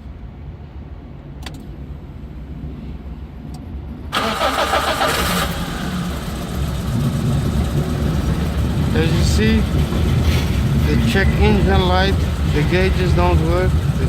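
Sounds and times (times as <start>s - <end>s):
engine running rough: 4.2s - 14.0s
starter cranking engine: 4.2s - 14.0s
low rumble: 5.3s - 14.0s.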